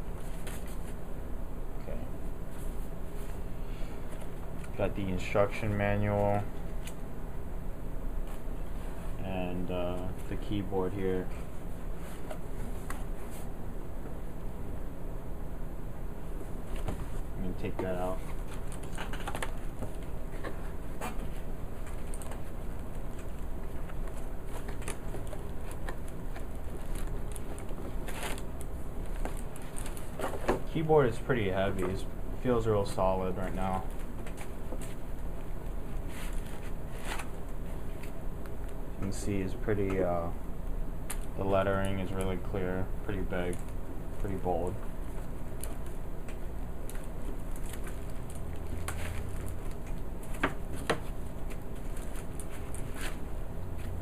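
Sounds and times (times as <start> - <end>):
steady low hum: 0.0 - 54.0
packaging rustling and crinkling: 16.7 - 31.2, 43.4 - 54.0
keyboard clicks and rustling: 21.9 - 28.5.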